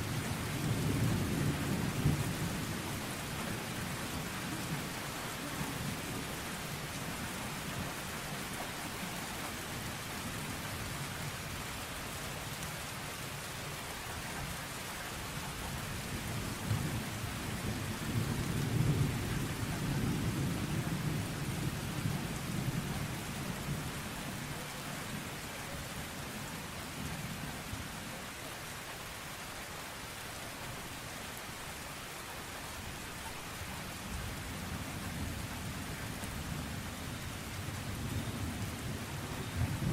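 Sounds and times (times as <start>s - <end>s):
steady rain falling: 0.0s - 39.9s
thunder rumbling: 38.0s - 39.9s.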